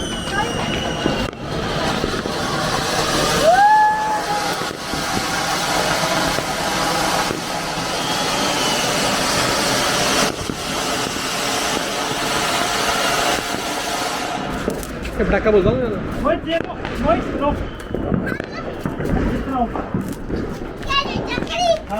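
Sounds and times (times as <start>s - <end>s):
rising whistle: 0.0s - 2.0s, 3.0s - 14.6s
firework spraying sparks hiss: 0.0s - 21.9s.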